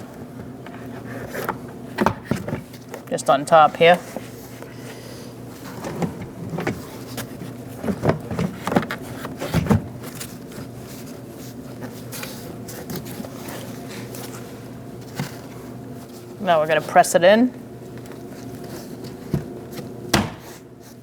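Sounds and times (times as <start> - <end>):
plastic door panel knocks and rattles: 20.1 - 20.5.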